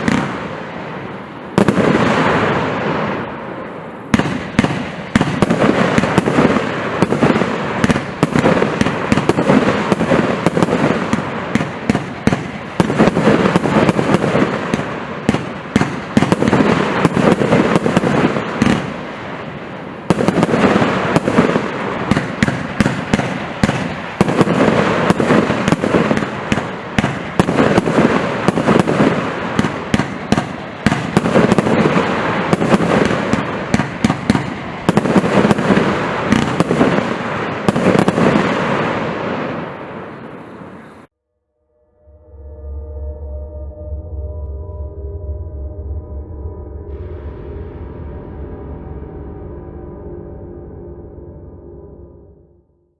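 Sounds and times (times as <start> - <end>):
firework barrage bangs: 0.0 - 41.1.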